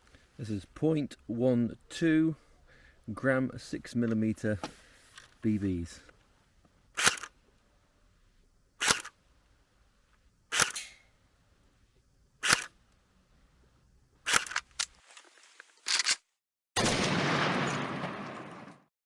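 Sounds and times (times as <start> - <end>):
airsoft gun firing: 7.0 - 7.3, 8.8 - 9.1, 10.5 - 11.0, 12.4 - 12.7, 14.3 - 14.6.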